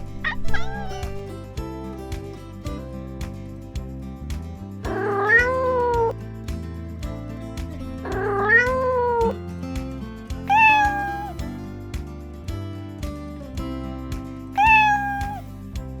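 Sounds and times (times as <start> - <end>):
cat meowing: 0.0 - 1.3, 4.9 - 6.1, 8.1 - 9.3, 10.5 - 11.4, 14.6 - 15.4
background music: 0.0 - 16.0.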